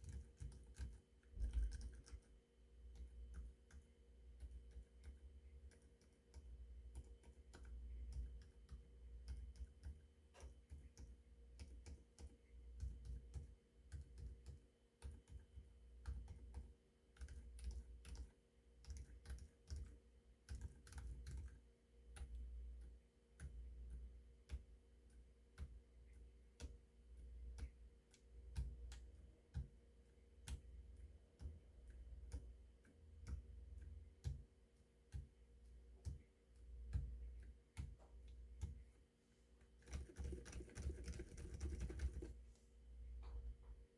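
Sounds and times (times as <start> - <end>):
mechanical keyboard typing: 0.0 - 2.3, 2.9 - 22.4, 39.8 - 42.4.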